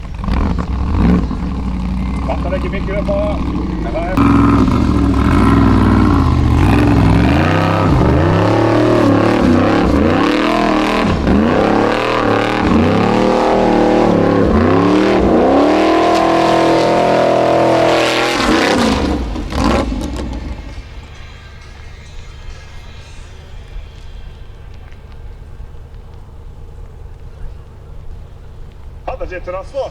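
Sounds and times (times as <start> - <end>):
buggy engine revving hard: 0.0 - 21.4.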